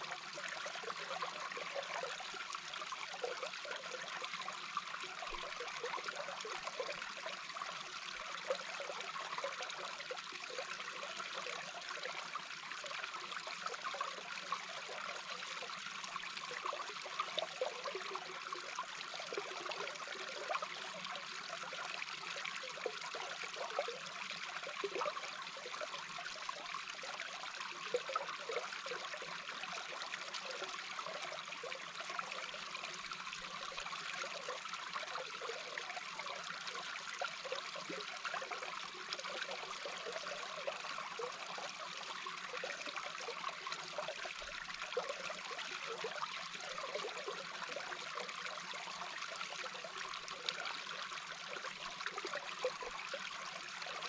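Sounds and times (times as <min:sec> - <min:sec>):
water flowing underwater: 0:00.0 - 0:54.0
bubbling gurgles: 0:13.5 - 0:54.0.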